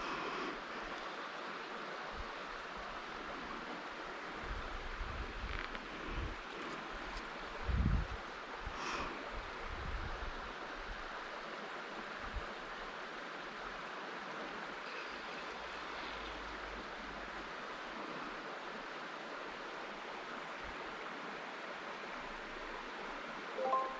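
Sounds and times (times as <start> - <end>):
river water rushing: 12.7 - 23.9.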